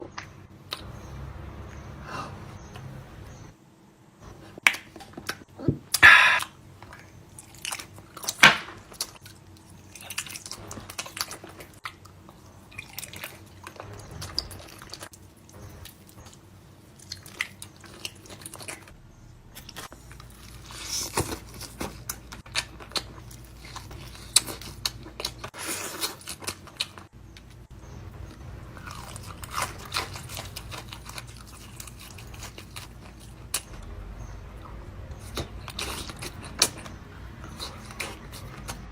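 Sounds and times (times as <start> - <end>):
person crunching and chewing: 19.6 - 27.6, 28.2 - 33.8, 35.1 - 38.9.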